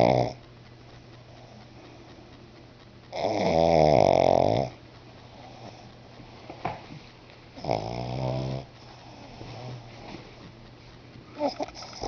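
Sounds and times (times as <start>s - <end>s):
dog snoring: 0.0s - 0.5s, 3.1s - 6.0s, 7.6s - 10.3s, 11.3s - 12.0s
quiet breathing: 1.3s - 2.4s, 4.2s - 6.6s, 7.7s - 12.0s.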